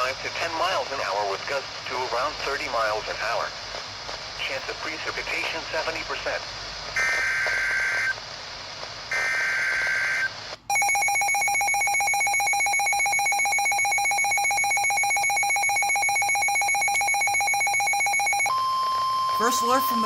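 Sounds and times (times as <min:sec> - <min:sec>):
pulsing electronic alarm beep: 0:09.2 - 0:20.0.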